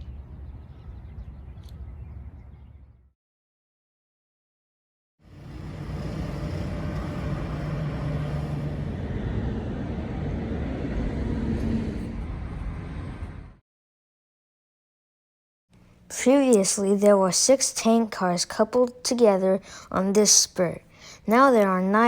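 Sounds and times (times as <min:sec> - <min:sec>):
road traffic noise: 0:05.2 - 0:13.6.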